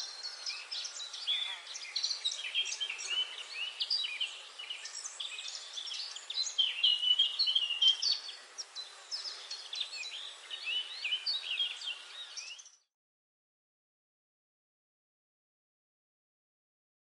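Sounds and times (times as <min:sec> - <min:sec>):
birds chirping: 0:00.0 - 0:12.9.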